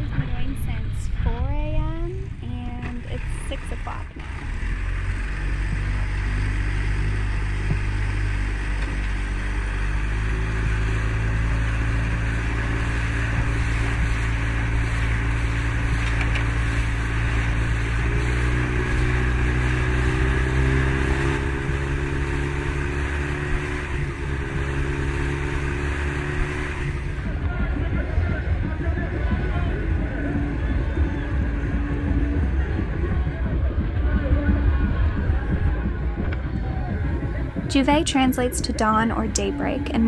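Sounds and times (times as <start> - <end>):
outboard motor running: 2.5 - 27.5.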